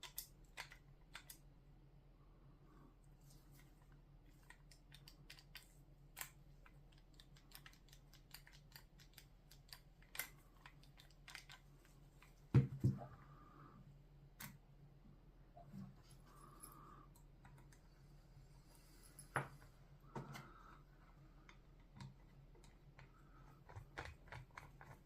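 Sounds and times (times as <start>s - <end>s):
faint low hum: 0.0s - 25.0s.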